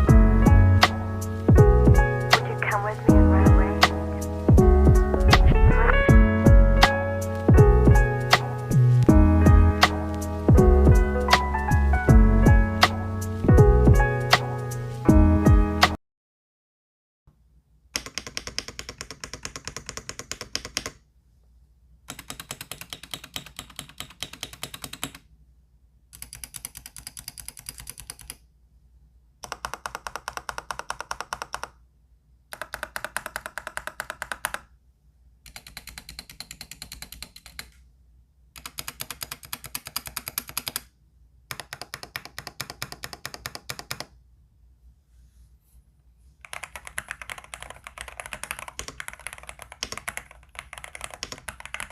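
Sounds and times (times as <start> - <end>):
mechanical keyboard typing: 18.0 - 21.0, 22.1 - 25.2, 26.2 - 28.4, 29.4 - 31.8, 32.5 - 34.7, 35.5 - 37.8, 38.6 - 40.9, 41.5 - 44.1, 46.4 - 51.9.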